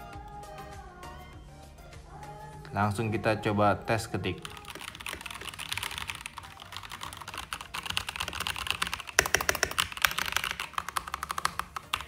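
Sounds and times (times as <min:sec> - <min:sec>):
mechanical keyboard typing: 0:04.4 - 0:12.0.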